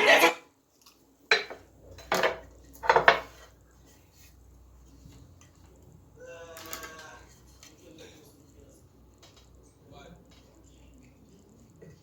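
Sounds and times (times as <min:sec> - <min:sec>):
hard objects clattering knocks: 0:01.3 - 0:03.4.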